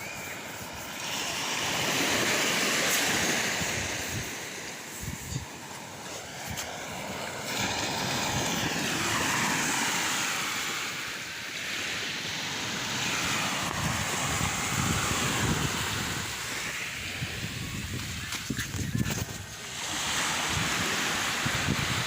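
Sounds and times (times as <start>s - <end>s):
sea waves washing in: 0.0s - 22.0s
wind buffeting microphone: 3.0s - 9.9s, 12.4s - 22.0s.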